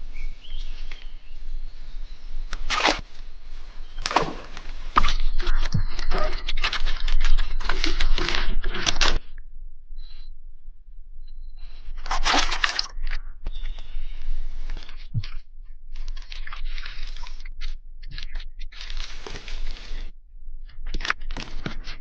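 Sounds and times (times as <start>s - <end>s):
crunching and crackling: 0.0s - 9.3s, 12.0s - 15.3s.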